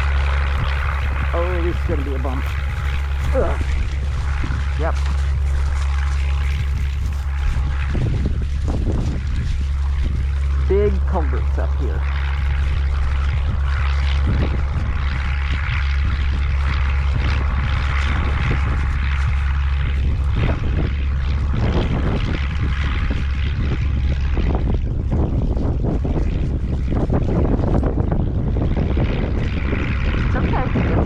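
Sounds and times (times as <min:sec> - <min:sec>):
cart rumbling: 0:00.0 - 0:15.0.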